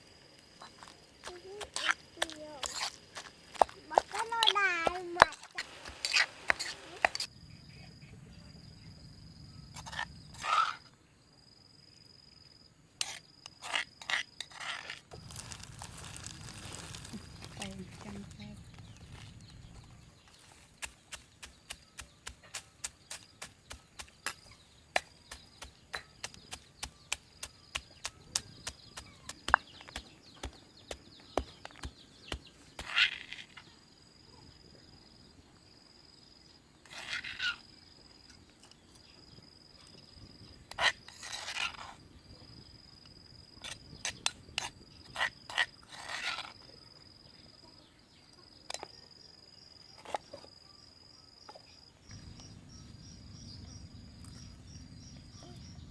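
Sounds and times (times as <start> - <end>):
insect trilling: 0.0 - 10.9, 13.0 - 35.2, 36.2 - 38.4.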